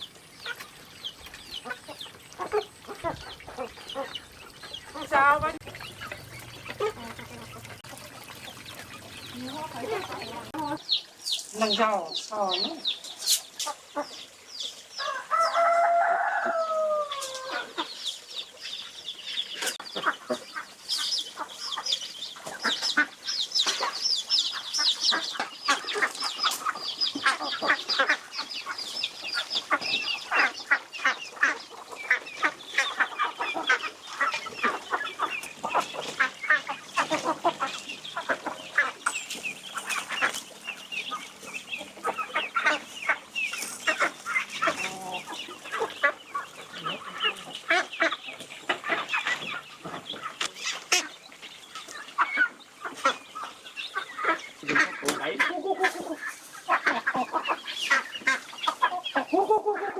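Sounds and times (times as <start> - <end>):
chickens clucking: 0.0 - 59.9
chicks cheeping: 0.0 - 59.9
rooster crowing: 15.0 - 17.8.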